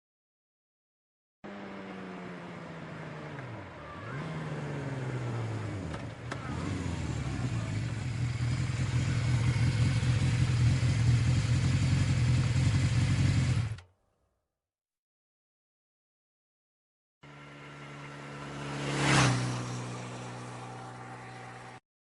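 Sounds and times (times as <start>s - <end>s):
motorcycle engine running: 1.5s - 13.8s, 17.2s - 21.8s.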